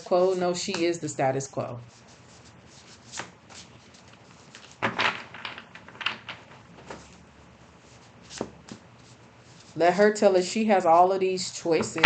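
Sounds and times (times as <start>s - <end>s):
cards shuffling: 2.0s - 7.2s, 7.9s - 9.8s.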